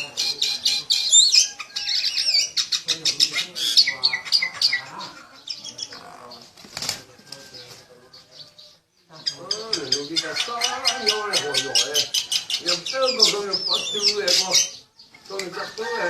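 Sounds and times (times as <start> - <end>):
birds squawking: 0.0 - 16.0
wings flapping: 6.4 - 7.9.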